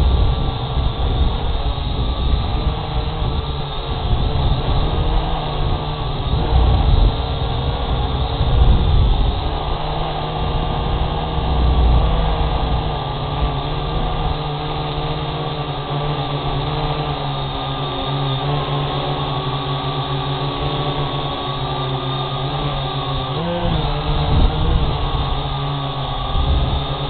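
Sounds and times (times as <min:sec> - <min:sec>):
low rumble: 0:00.0 - 0:14.4
quadcopter propellers humming: 0:00.0 - 0:27.0.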